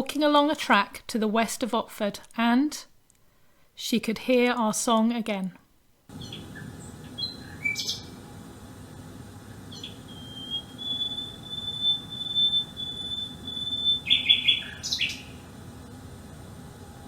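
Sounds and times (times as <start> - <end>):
nightingale singing: 6.1 - 8.2, 9.5 - 15.5.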